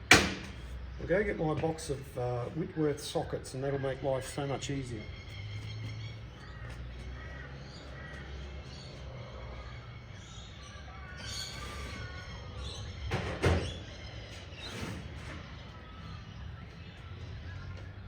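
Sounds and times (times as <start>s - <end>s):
birds chirping: 0.0s - 18.0s
loud clunk: 0.1s - 0.6s.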